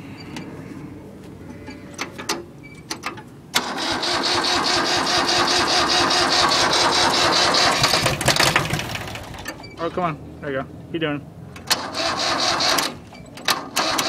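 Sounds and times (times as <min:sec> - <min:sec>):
tractor starter cranking engine: 0:01.9 - 0:10.0, 0:11.6 - 0:14.0.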